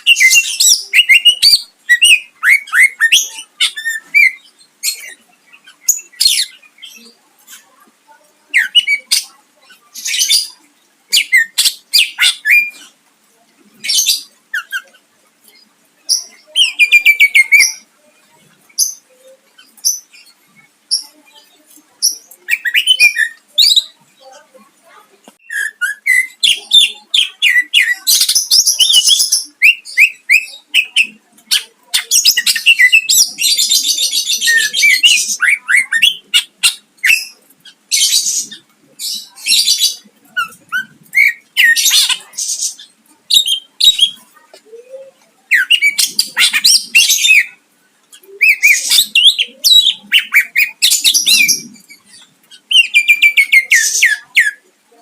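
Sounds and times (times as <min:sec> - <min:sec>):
bird singing chirps and trills: 0:00.0 - 0:55.0.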